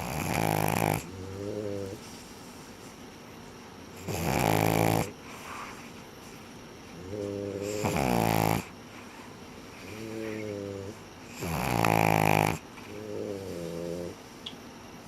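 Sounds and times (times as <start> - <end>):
dogs snoring: 0.0 - 2.2, 3.9 - 5.9, 6.9 - 14.2.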